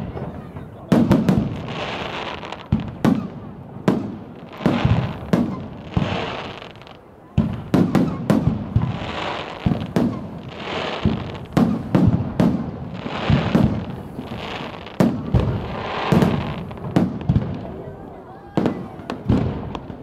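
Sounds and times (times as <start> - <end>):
fireworks bangs: 0.0 - 20.0
fireworks crackling and hiss: 0.0 - 20.0.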